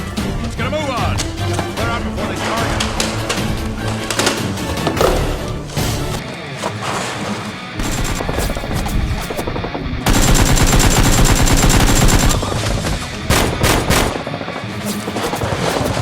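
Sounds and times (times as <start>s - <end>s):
background music: 0.0s - 16.0s
automatic gunfire: 7.8s - 16.0s.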